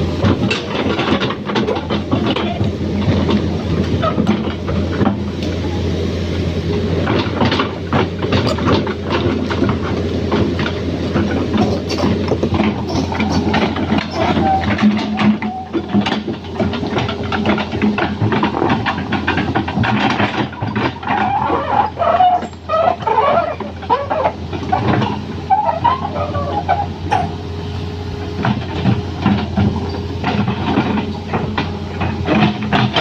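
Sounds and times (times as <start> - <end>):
excavator engine humming: 0.0 - 33.0
metallic clanks and knocks: 0.2 - 5.6, 7.0 - 33.0.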